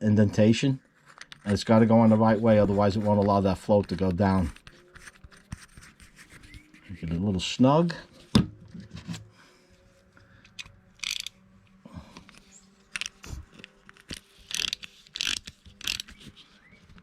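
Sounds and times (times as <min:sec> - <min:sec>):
hand tool metal clicks and scrapes: 0:10.4 - 0:11.4, 0:12.2 - 0:16.4.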